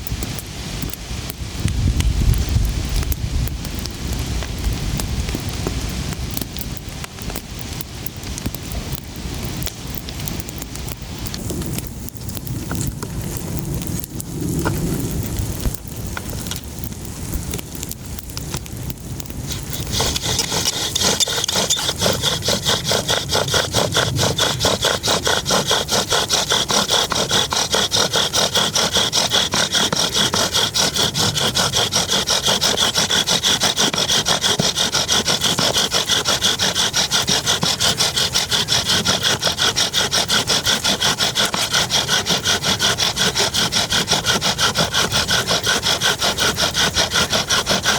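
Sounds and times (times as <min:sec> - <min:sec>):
hand saw cutting wood: 0:19.2 - 0:47.9.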